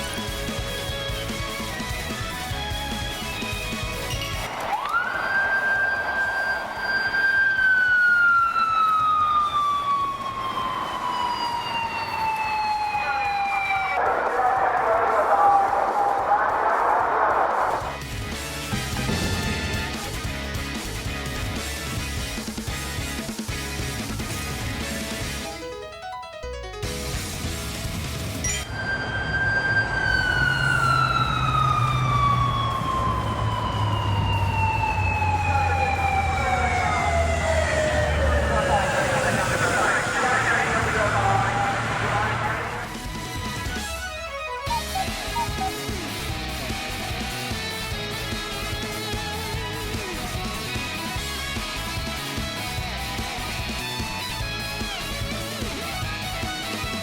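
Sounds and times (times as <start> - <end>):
motorcycle siren wailing: 0.0 - 18.0, 28.5 - 57.0
low engine hum: 28.6 - 43.2.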